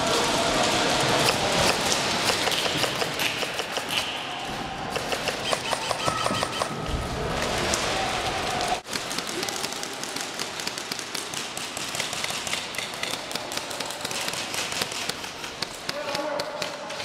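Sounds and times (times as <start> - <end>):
airsoft guns firing: 0.2 - 4.3, 8.8 - 17.0.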